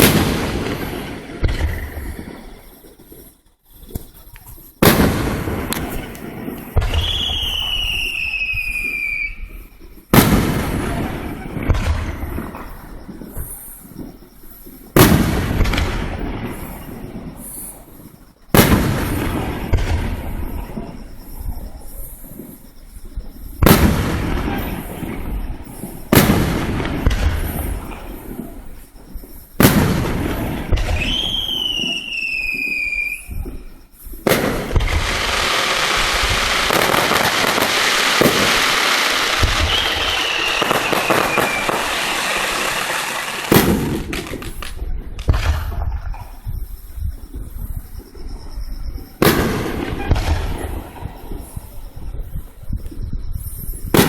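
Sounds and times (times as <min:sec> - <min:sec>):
fireworks bangs with crackling tail: 0:00.0 - 0:54.0
falling whistle-like tone: 0:07.0 - 0:09.5, 0:31.0 - 0:33.4, 0:39.4 - 0:43.4.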